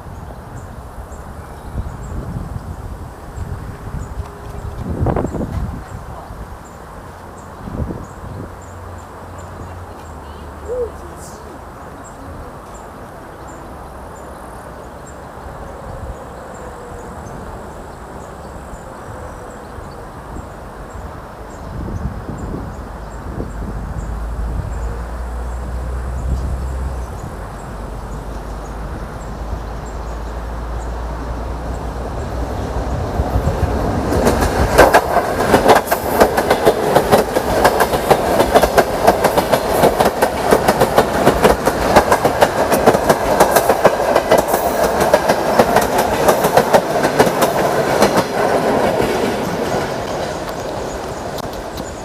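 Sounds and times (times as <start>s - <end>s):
train rumble: 0.0s - 52.0s
train wheels clattering on rails: 25.6s - 52.0s.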